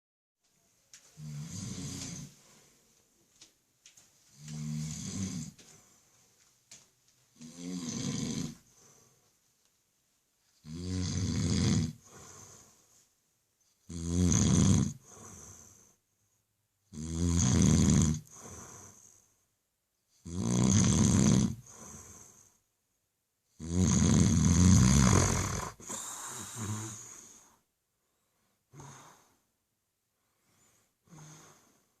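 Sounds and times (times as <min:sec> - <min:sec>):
faint breaths: 0:00.7 - 0:09.7, 0:11.9 - 0:13.2, 0:15.0 - 0:16.5, 0:18.2 - 0:19.5, 0:21.6 - 0:22.7, 0:25.2 - 0:32.0
man snoring: 0:01.2 - 0:02.3, 0:04.4 - 0:05.6, 0:07.4 - 0:08.6, 0:10.6 - 0:12.6, 0:13.9 - 0:15.8, 0:16.9 - 0:19.1, 0:20.2 - 0:22.5, 0:23.6 - 0:27.5, 0:31.0 - 0:31.8.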